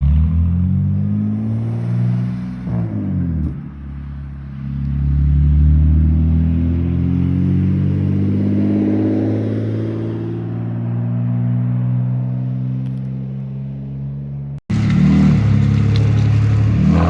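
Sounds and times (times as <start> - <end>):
car engine accelerating: 14.7 - 17.0.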